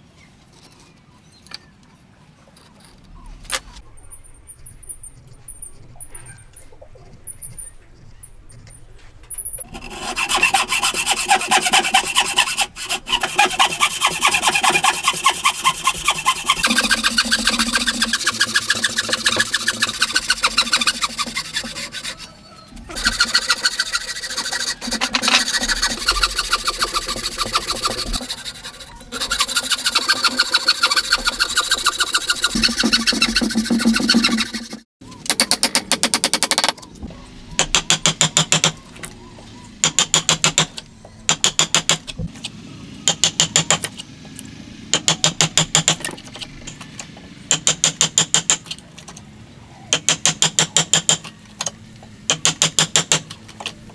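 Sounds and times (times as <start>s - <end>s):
hand tool rasping on wood: 9.7s - 22.3s, 22.9s - 34.9s.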